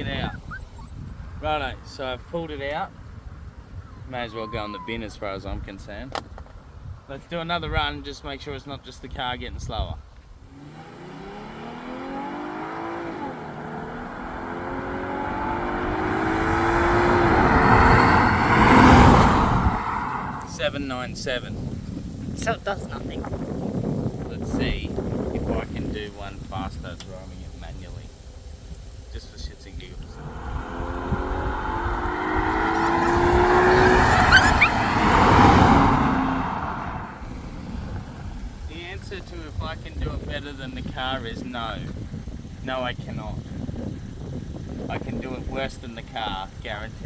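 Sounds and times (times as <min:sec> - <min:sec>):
road and wind noise: 0:00.0 - 0:47.0
car engine accelerating: 0:10.4 - 0:20.7, 0:29.9 - 0:39.0.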